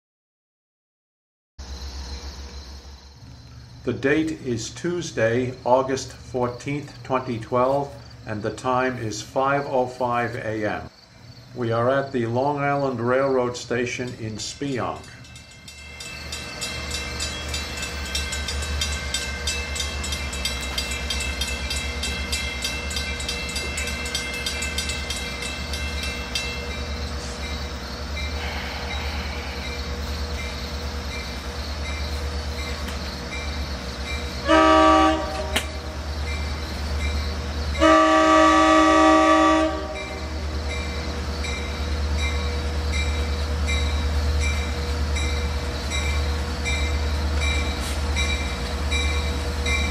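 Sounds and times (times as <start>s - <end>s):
diesel locomotive idling: 1.6s - 49.9s
train horn blasts: 34.4s - 36.0s, 37.8s - 40.5s.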